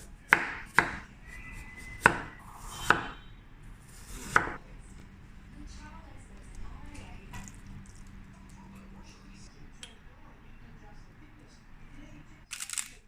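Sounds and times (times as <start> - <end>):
knife chopping on cutting board: 0.0 - 1.0, 1.8 - 3.2, 3.9 - 4.6.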